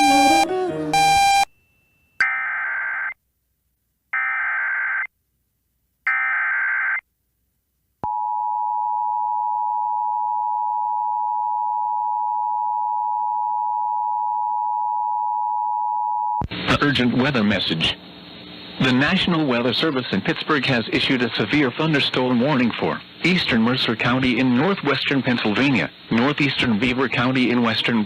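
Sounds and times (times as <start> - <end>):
continuous warning alarm tone: 0.0 - 1.5.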